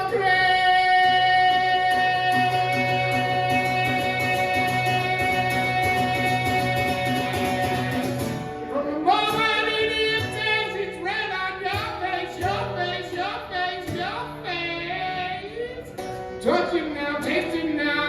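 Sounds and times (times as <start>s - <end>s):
acoustic guitar chords: 0.0s - 18.0s
person singing: 0.0s - 18.0s.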